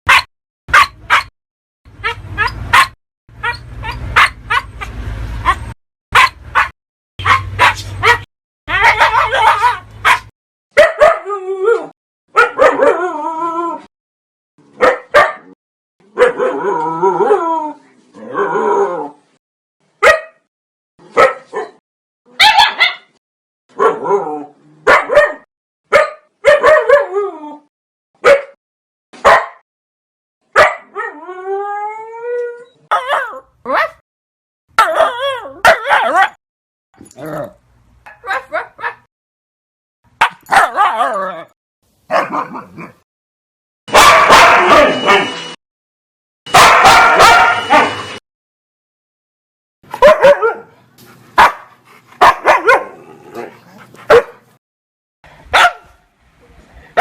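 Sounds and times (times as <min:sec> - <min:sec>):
dog barking: 0:00.1 - 0:01.3, 0:02.0 - 0:04.8, 0:06.2 - 0:11.3, 0:12.3 - 0:13.0, 0:14.8 - 0:16.6, 0:20.0 - 0:24.2, 0:24.8 - 0:27.1, 0:28.2 - 0:28.6, 0:29.2 - 0:29.6, 0:30.5 - 0:31.0, 0:32.9 - 0:34.0, 0:34.8 - 0:36.4, 0:38.1 - 0:39.1, 0:40.2 - 0:41.4, 0:42.1 - 0:43.0, 0:43.9 - 0:45.3, 0:46.5 - 0:48.0, 0:49.9 - 0:50.7, 0:51.4 - 0:54.4, 0:55.5 - 0:56.1
dog whining: 0:02.0 - 0:04.9
dog howling: 0:12.6 - 0:13.9, 0:44.2 - 0:45.3.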